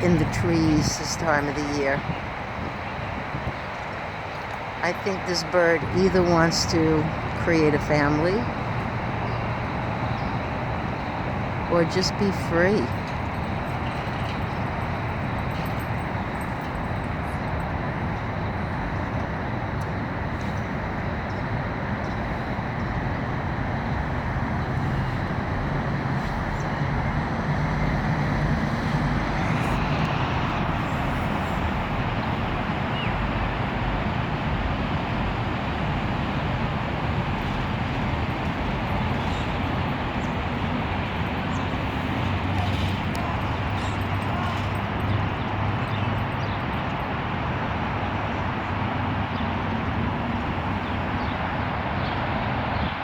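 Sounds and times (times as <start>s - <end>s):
urban street traffic: 0.0s - 53.0s.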